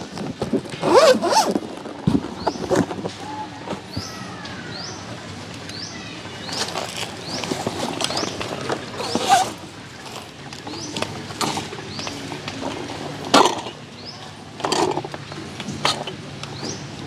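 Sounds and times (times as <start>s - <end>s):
metal camp gear clacking: 0.8s - 3.0s, 6.5s - 16.2s.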